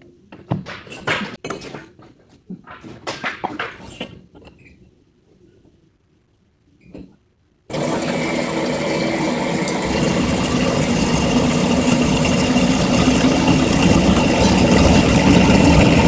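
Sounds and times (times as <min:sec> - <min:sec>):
welding arc buzzing: 0:07.7 - 0:16.0.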